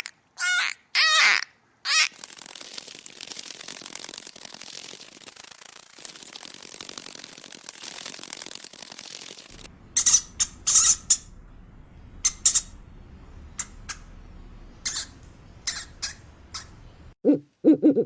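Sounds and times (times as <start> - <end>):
small animal squeaking: 10.0 - 11.2, 12.3 - 12.7, 14.8 - 16.8.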